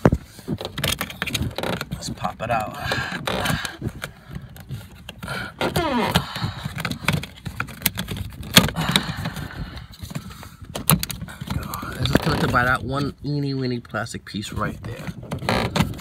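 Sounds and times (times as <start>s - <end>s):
door handle clicks and rattles: 10.7s - 11.6s.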